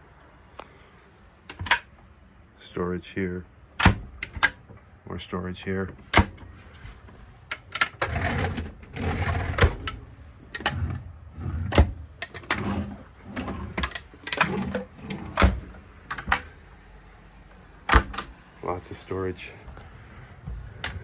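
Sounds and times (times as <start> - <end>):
cabinet doors and drawers clicking: 1.5 - 1.9, 3.8 - 4.6, 5.9 - 16.6, 17.8 - 18.4, 19.7 - 21.0.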